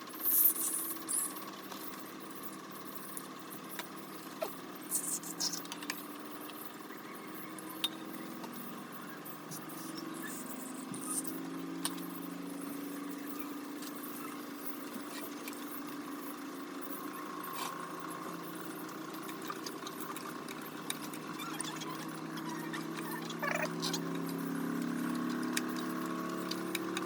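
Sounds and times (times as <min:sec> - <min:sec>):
motor humming: 0:00.1 - 0:27.0.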